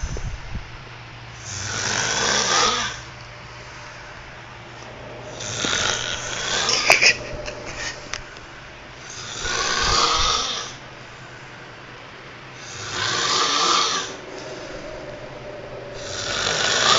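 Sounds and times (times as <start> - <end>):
person snoring: 16.0 - 16.9.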